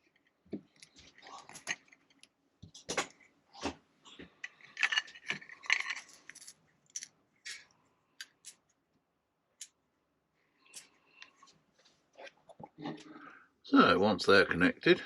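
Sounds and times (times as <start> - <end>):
wiring connectors clicking and rattling: 0.0 - 3.3, 4.1 - 8.7.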